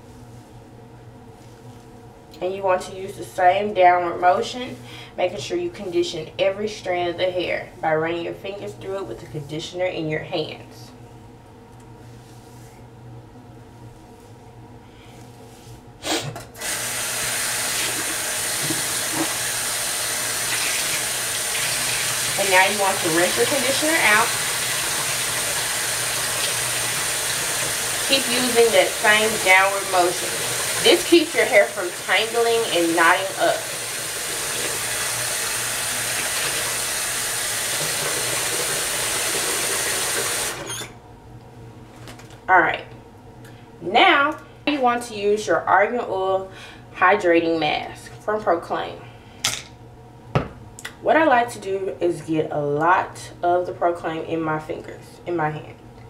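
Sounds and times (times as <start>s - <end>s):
water running from tap into sink: 16.6s - 40.8s.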